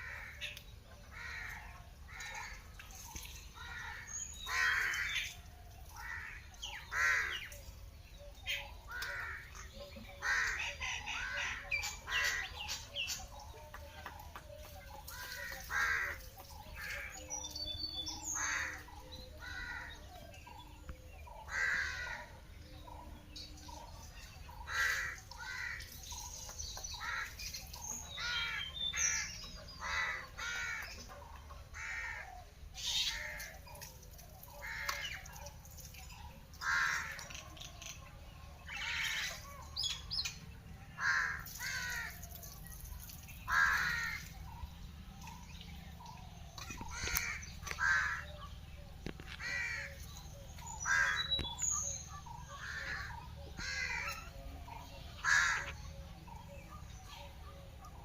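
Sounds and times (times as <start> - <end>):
crows cawing: 0.0 - 0.5, 1.1 - 2.7, 3.6 - 5.3, 6.0 - 7.5, 8.9 - 12.6, 15.1 - 17.2, 18.3 - 20.1, 21.4 - 22.4, 24.5 - 26.0, 26.9 - 27.4, 28.1 - 31.0, 31.7 - 33.8, 34.5 - 35.3, 36.6 - 37.4, 41.0 - 42.3, 43.5 - 44.4, 46.8 - 48.4, 49.4 - 50.0, 50.7 - 51.4, 52.5 - 54.3, 55.2 - 55.8
small birds chirping: 0.0 - 40.7, 41.3 - 58.0.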